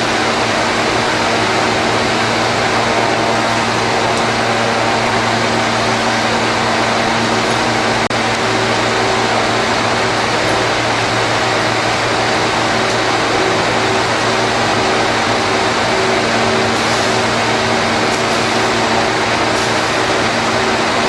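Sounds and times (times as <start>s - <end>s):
plasma torch cutting hiss: 16.7s - 17.4s, 18.0s - 20.3s.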